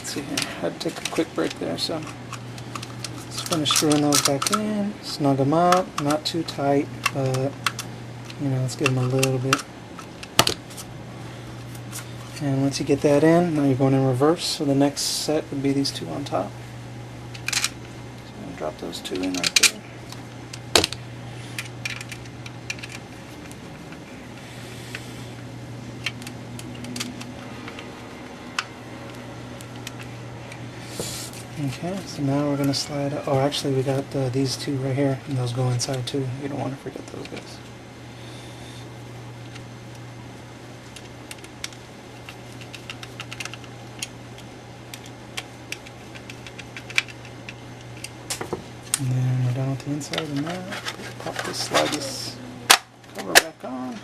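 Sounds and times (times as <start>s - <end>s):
steady low hum: 0.0s - 54.0s
small plastic parts clicking: 0.4s - 4.6s, 42.5s - 44.1s, 44.9s - 48.4s.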